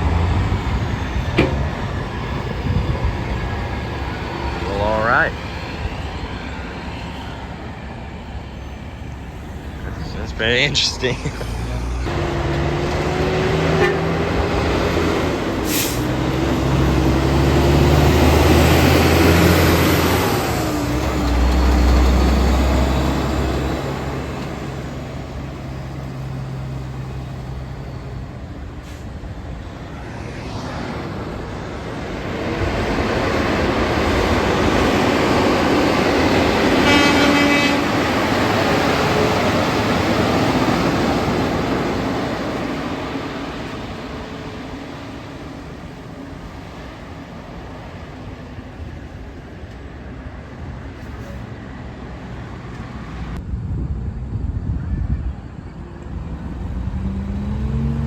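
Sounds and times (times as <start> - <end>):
heavy trucks passing: 0.0 - 54.7, 55.4 - 58.0
truck horn blast: 13.2 - 14.6, 36.8 - 38.2.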